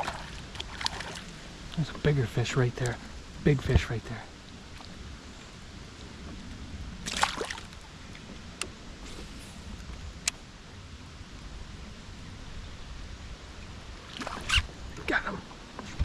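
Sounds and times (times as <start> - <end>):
water splash: 0.0 - 1.3, 7.0 - 7.8
river water rushing: 0.0 - 1.8, 7.0 - 8.0.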